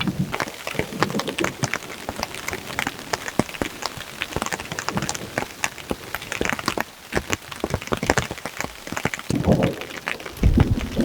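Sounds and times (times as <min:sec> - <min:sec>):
rain falling: 0:00.0 - 0:11.0
low rumble: 0:10.4 - 0:11.0.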